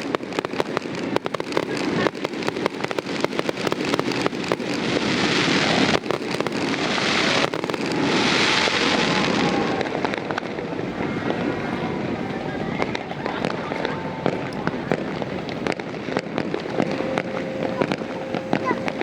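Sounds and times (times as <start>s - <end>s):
fireworks popping and crackling: 0.0s - 19.0s.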